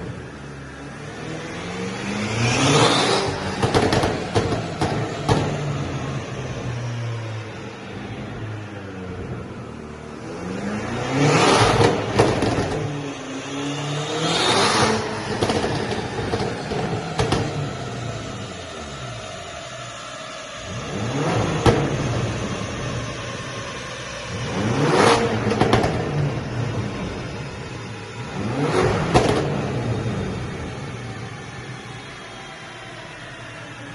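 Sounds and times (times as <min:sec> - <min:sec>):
car engine revving: 0:00.0 - 0:33.9
exhaust crackles and pops: 0:02.8 - 0:06.0, 0:11.5 - 0:13.2, 0:14.8 - 0:17.9, 0:21.3 - 0:22.8, 0:24.4 - 0:27.3, 0:28.4 - 0:30.7.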